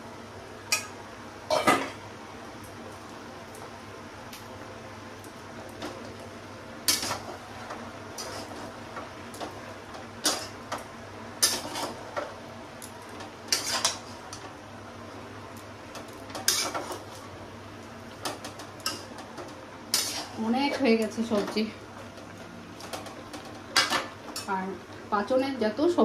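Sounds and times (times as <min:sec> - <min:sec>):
metal spatula scraping a pan: 0:16.5 - 0:16.8, 0:19.9 - 0:20.4.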